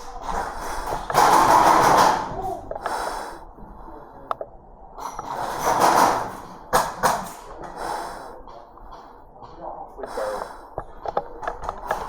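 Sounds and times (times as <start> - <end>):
sharp cracks: 0.4 - 3.1.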